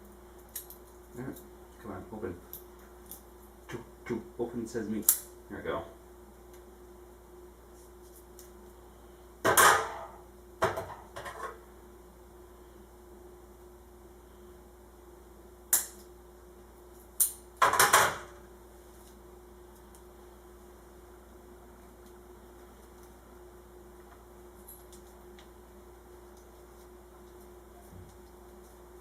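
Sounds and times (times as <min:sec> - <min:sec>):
faint steady hum: 0:00.0 - 0:29.0.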